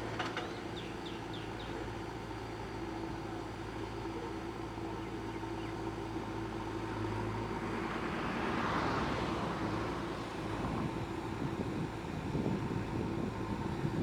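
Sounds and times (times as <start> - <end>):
diesel engine running: 10.1 - 14.0.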